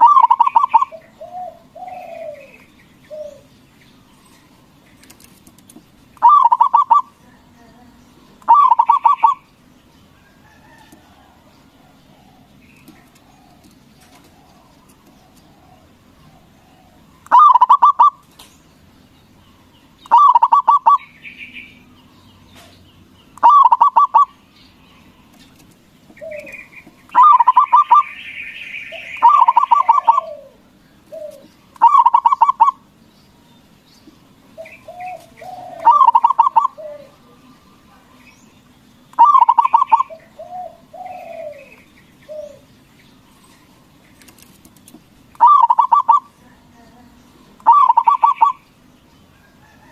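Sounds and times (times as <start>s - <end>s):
dove cooing: 0.0s - 5.6s, 6.2s - 9.5s, 10.3s - 18.3s, 20.0s - 21.8s, 23.4s - 24.5s, 26.1s - 32.9s, 34.5s - 38.1s, 39.1s - 42.8s, 43.4s - 48.6s
bird chirps and gliding calls: 0.0s - 49.9s.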